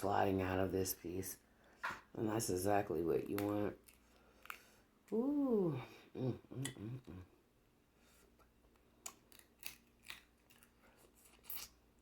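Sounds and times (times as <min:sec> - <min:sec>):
person humming with enjoyment: 0:05.1 - 0:07.3
crab shells cracking: 0:09.0 - 0:10.8.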